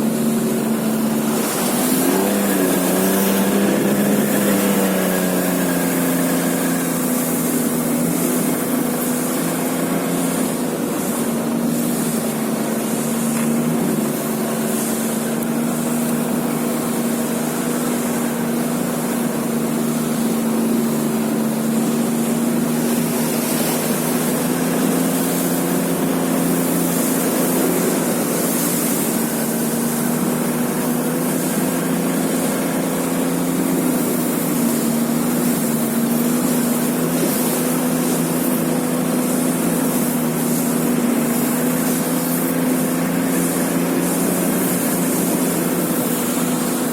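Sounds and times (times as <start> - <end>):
rushing noise: 0.0 - 16.8
vehicle engine running: 0.0 - 46.9.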